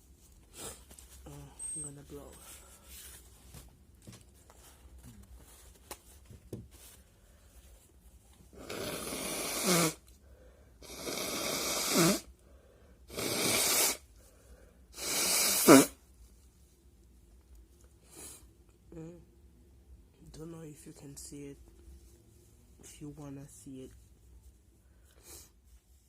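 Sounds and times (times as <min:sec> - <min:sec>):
person blowing nose: 0:00.5 - 0:00.9, 0:08.5 - 0:10.1, 0:10.8 - 0:12.3, 0:13.1 - 0:14.1, 0:14.9 - 0:16.0, 0:25.2 - 0:25.6.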